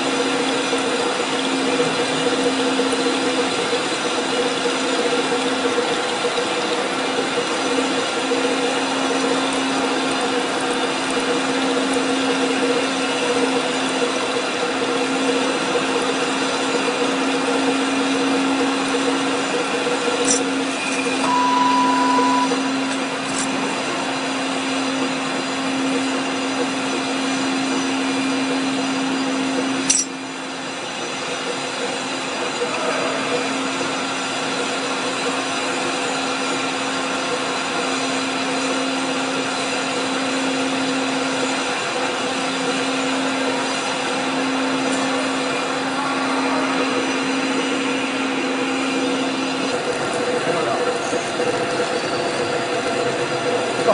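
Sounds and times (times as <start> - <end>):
lathe humming: 0.0 - 53.9
beep-like tone: 21.2 - 22.8.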